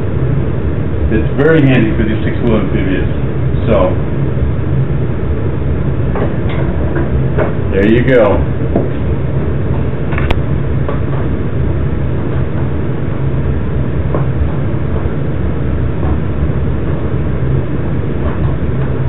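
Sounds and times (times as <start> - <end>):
loud low rumbling drone: 0.0 - 19.0.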